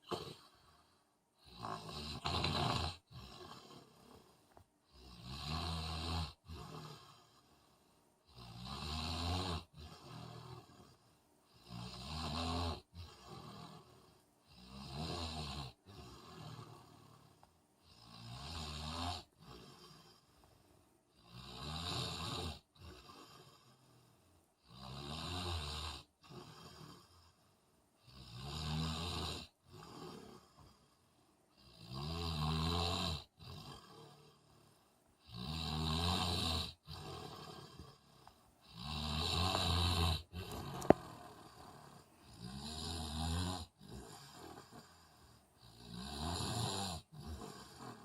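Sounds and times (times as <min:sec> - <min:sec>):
quiet breathing: 0:00.0 - 0:05.2, 0:06.3 - 0:08.6, 0:09.6 - 0:12.0, 0:12.8 - 0:14.8, 0:15.7 - 0:18.3, 0:19.2 - 0:21.2, 0:22.6 - 0:24.6, 0:26.1 - 0:28.3, 0:29.4 - 0:31.8, 0:33.2 - 0:35.4, 0:36.7 - 0:42.7, 0:43.6 - 0:48.0
man snoring: 0:00.0 - 0:07.7, 0:08.3 - 0:20.4, 0:21.1 - 0:48.0.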